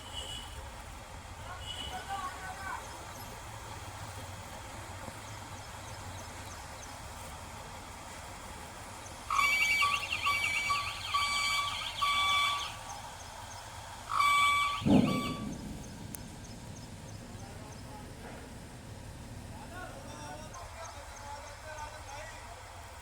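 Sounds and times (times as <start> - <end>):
low machinery hum: 2.3 - 23.0
warbling electronic alarm: 9.3 - 12.9, 14.1 - 15.8.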